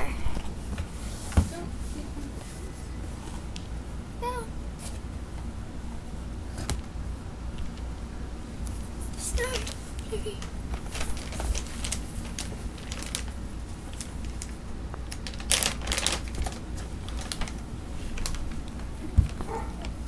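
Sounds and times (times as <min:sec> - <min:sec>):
rustling: 0:08.6 - 0:20.0.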